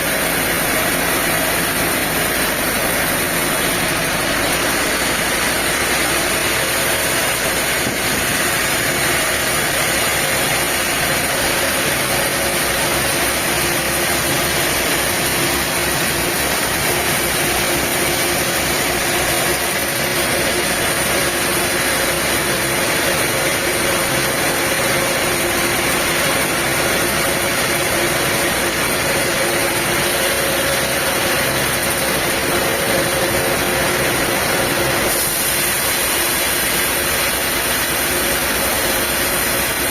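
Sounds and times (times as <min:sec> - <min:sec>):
diesel engine running: 0:00.0 - 0:39.9
mechanical hiss: 0:35.1 - 0:37.8.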